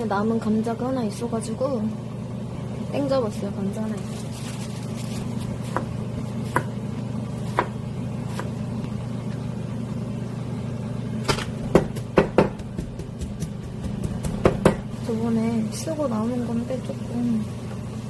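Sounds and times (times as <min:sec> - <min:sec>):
kitchen appliance humming: 0:00.0 - 0:18.0.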